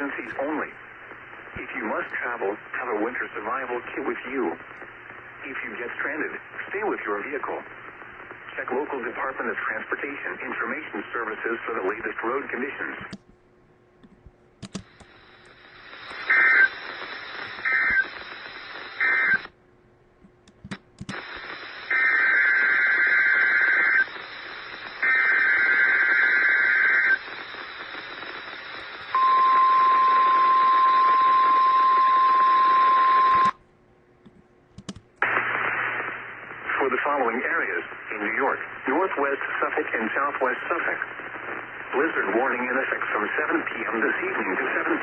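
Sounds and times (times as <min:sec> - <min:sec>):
radio hiss: 0:00.0 - 0:13.2, 0:14.8 - 0:19.5, 0:21.1 - 0:33.5, 0:35.2 - 0:45.0
steady warning alarm tone: 0:29.1 - 0:33.5.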